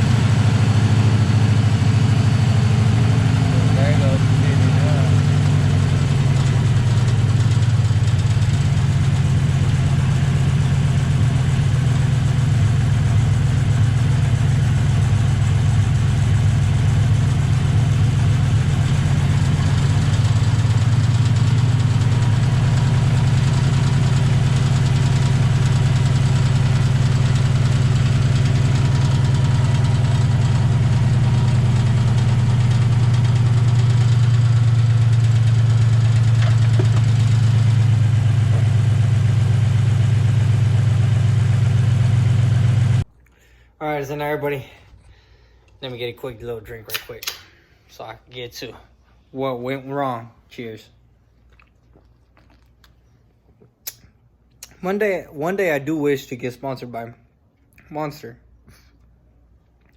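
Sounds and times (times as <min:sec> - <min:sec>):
car engine idling with misfire: 0:00.0 - 0:43.0.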